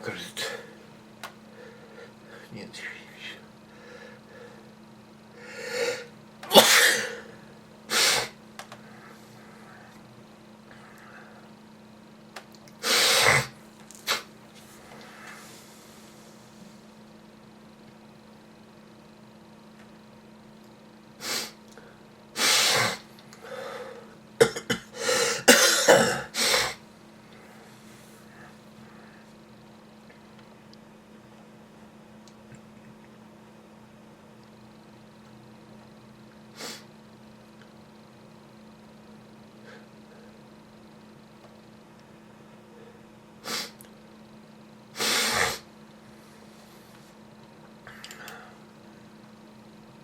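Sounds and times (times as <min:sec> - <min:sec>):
in-breath: 0:01.5 - 0:02.5, 0:03.7 - 0:04.7, 0:05.4 - 0:06.1, 0:08.8 - 0:10.0, 0:10.7 - 0:11.5, 0:21.3 - 0:22.1, 0:23.4 - 0:24.2, 0:27.3 - 0:29.3, 0:47.8 - 0:48.6
man sneezing: 0:05.6 - 0:08.4, 0:12.8 - 0:14.3, 0:22.4 - 0:23.1, 0:24.4 - 0:26.8, 0:45.0 - 0:45.7
person coughing: 0:05.7 - 0:07.3, 0:24.4 - 0:26.8.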